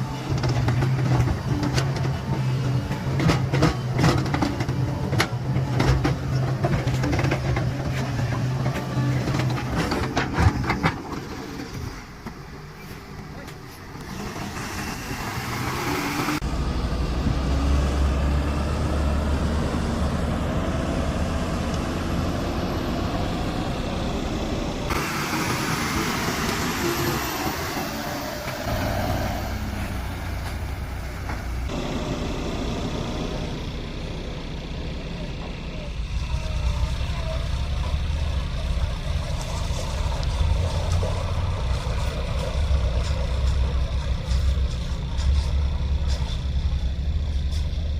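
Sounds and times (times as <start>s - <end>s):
excavator diesel engine rumbling: 0.0s - 47.9s.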